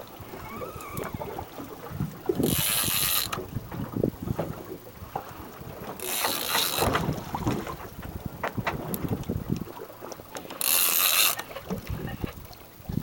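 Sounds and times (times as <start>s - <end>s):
fishing reel ratcheting clicks: 2.4s - 3.4s, 6.0s - 6.9s, 10.4s - 11.5s.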